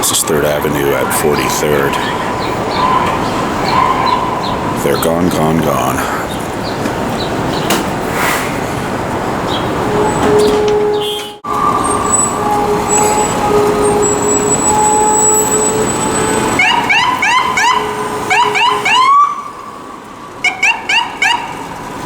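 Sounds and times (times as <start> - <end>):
siren yelping: 0.0 - 4.8, 9.8 - 21.7
city street traffic: 0.0 - 22.0.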